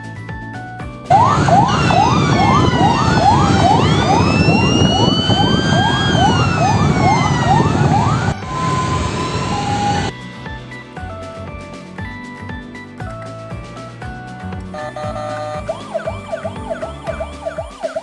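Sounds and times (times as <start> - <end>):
fast rising siren sweep: 1.1 - 10.1, 14.8 - 18.0
siren gliding up and down: 1.1 - 10.1, 14.8 - 18.0
vehicle rumble: 1.1 - 10.1.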